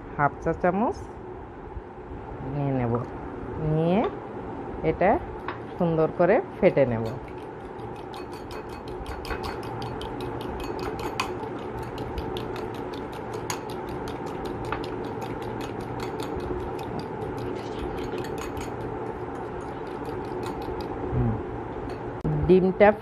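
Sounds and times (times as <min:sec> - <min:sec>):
utensil clicking against bowl: 0:07.0 - 0:21.0.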